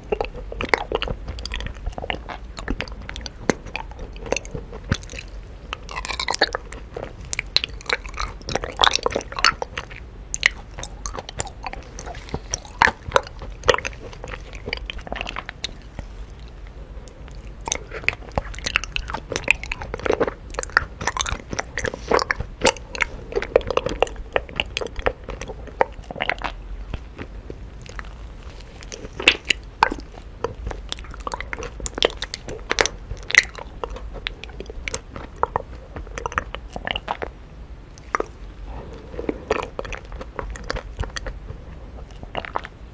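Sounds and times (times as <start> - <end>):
person chewing honeycomb: 0.0 - 42.9.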